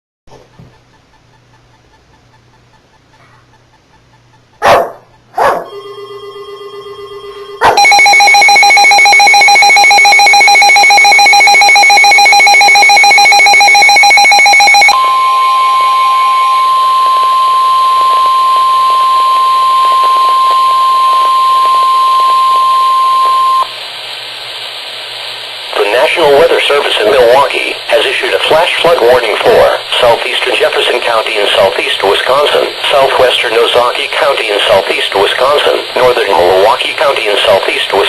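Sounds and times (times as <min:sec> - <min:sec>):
pulsing two-tone alert signal: 0:05.7 - 0:23.7
buzzing tone: 0:05.7 - 0:23.8
loud alert bursts: 0:07.6 - 0:23.7.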